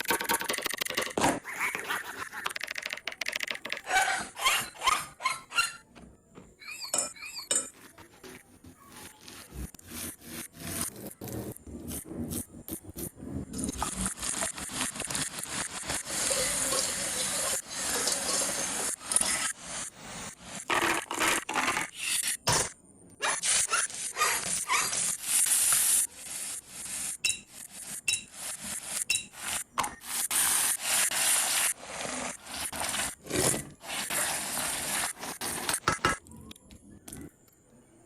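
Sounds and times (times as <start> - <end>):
metal utensil scraping cookware: 6.7 - 8.0.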